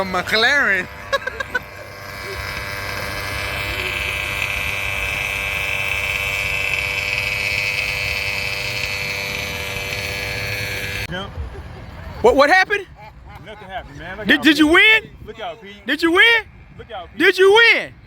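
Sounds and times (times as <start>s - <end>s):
toy car motor whine: 0.0s - 11.1s.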